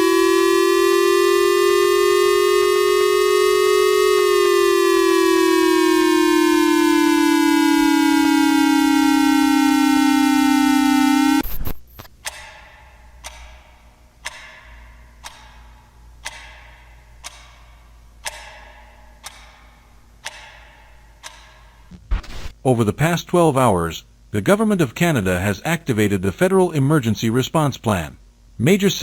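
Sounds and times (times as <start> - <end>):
loud siren sliding down: 0.0 - 11.4.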